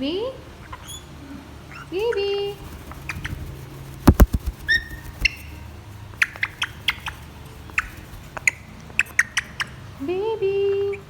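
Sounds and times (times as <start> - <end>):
parrot whistled squeaks: 0.7 - 1.1
parrot sharp clicks: 4.0 - 5.4.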